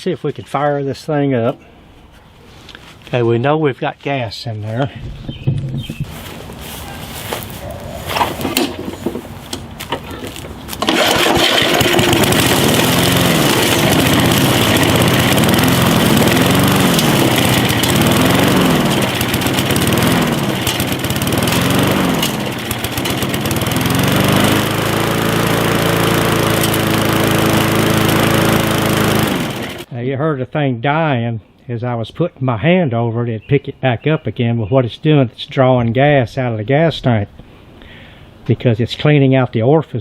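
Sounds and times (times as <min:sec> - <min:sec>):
lawn mower engine surging: 0:05.2 - 0:29.9.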